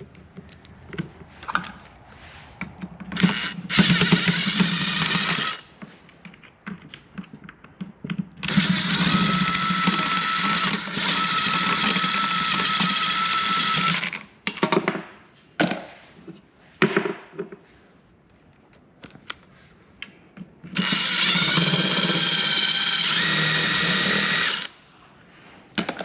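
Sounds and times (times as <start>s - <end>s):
power drill running: 3.1s - 5.7s, 8.4s - 14.2s, 20.8s - 24.8s.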